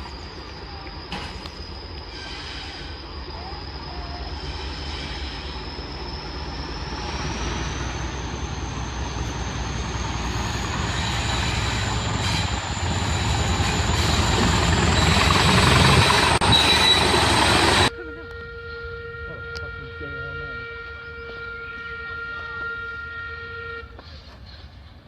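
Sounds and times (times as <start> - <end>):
train rumble and rail noise: 0.0 - 25.0.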